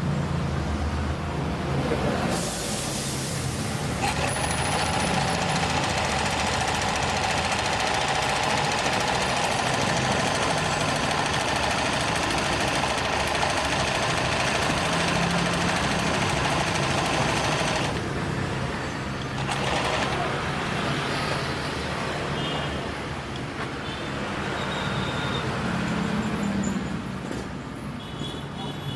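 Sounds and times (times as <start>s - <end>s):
sewing machine running: 4.0s - 18.0s, 19.3s - 20.5s.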